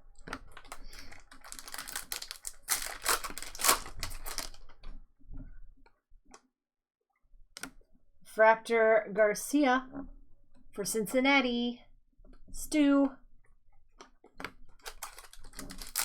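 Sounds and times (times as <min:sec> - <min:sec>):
trading cards clicking and rustling: 0:00.2 - 0:04.6, 0:14.4 - 0:16.0.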